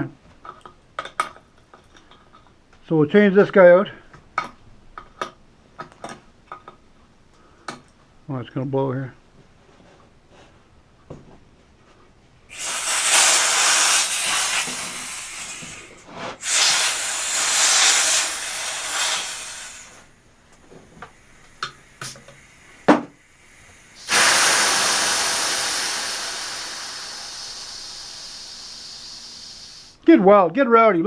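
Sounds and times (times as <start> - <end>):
compressed air hissing: 12.5 - 30.0.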